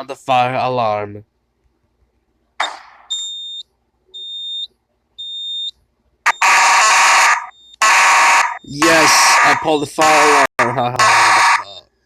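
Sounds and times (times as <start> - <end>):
harsh fire alarm blast: 6.3 - 11.8.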